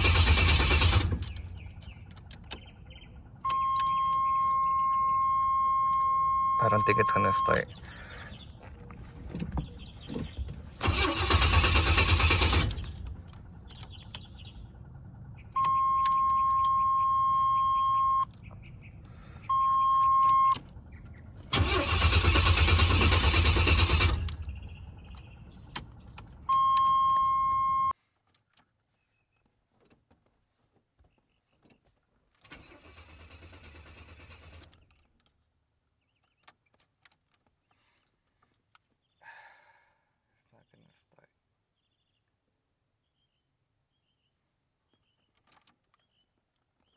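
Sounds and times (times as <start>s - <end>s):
car engine cranking: 0.0s - 8.6s, 9.2s - 27.9s, 32.4s - 35.4s
electronic warning tone: 3.4s - 7.6s, 15.6s - 18.2s.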